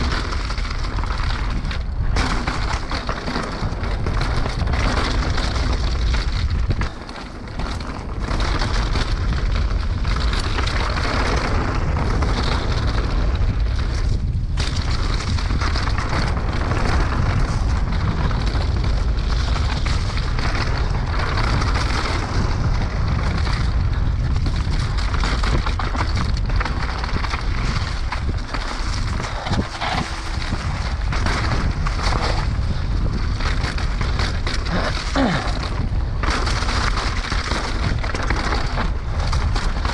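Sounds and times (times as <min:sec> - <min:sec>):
mountain bike rattling: 0:00.0 - 0:39.9
wind buffeting microphone: 0:00.0 - 0:39.9
tyre noise: 0:06.8 - 0:08.8, 0:27.6 - 0:37.6.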